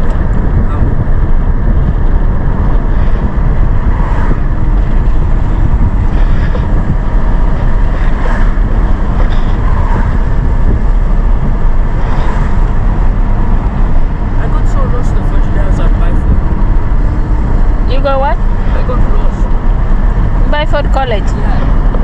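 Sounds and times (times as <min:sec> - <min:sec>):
car cabin road rumble: 0:00.0 - 0:22.0.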